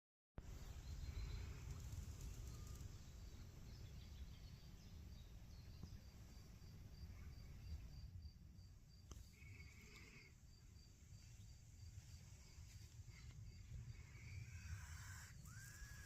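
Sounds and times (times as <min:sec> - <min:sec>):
low wind rumble: 0:00.4 - 0:09.0
insect chirping: 0:00.5 - 0:16.0.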